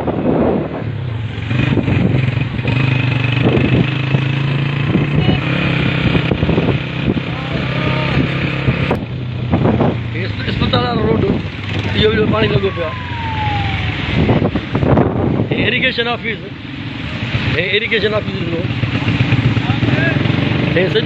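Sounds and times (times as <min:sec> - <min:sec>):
vehicle engine running: 0:01.2 - 0:15.6.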